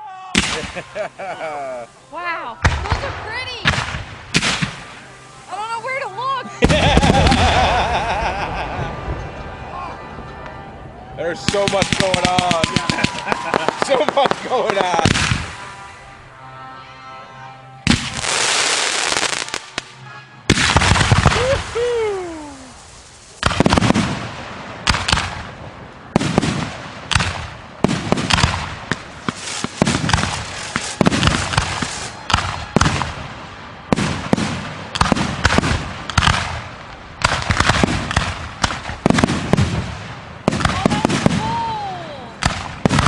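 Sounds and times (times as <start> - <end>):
fireworks crackle: 0.3 - 9.2, 11.3 - 16.0, 17.8 - 43.0
fireworks banging: 0.3 - 10.7, 11.3 - 16.2, 17.8 - 43.0
dense hissing burst: 0.4 - 2.6, 20.6 - 24.2.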